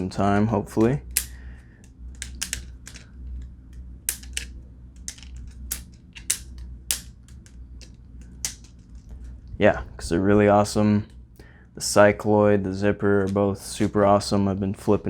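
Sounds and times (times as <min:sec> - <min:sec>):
butterfly knife handles clicking: 0:00.8 - 0:01.4, 0:02.2 - 0:03.1, 0:04.1 - 0:08.8.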